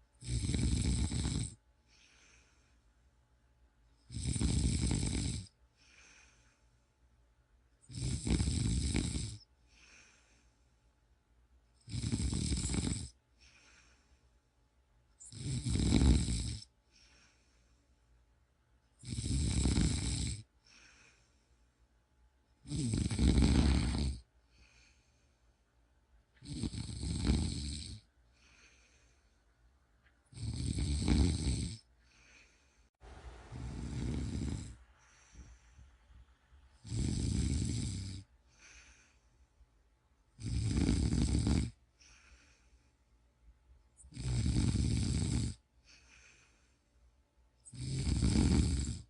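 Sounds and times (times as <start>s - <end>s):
person snoring: 0.2s - 2.6s, 4.1s - 6.4s, 7.8s - 10.4s, 11.8s - 14.0s, 15.2s - 17.4s, 19.0s - 21.2s, 22.6s - 25.1s, 26.4s - 29.2s, 30.3s - 32.6s, 33.4s - 35.8s, 36.8s - 39.2s, 40.4s - 42.6s, 44.0s - 46.6s, 47.6s - 49.0s
soft breath: 1.8s - 3.2s, 5.7s - 7.2s, 9.5s - 11.1s, 13.3s - 14.7s, 16.8s - 18.3s, 20.6s - 22.0s, 23.4s - 25.8s, 28.2s - 30.2s, 31.9s - 36.8s, 37.8s - 39.8s, 41.8s - 43.4s, 45.7s - 47.2s.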